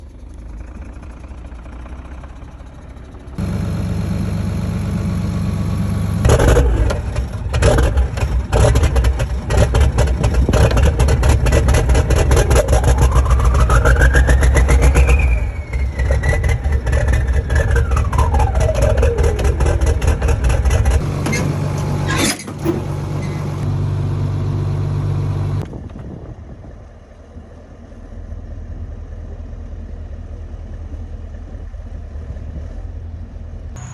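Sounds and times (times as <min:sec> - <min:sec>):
diesel tractor engine revving: 0:02.0 - 0:25.6.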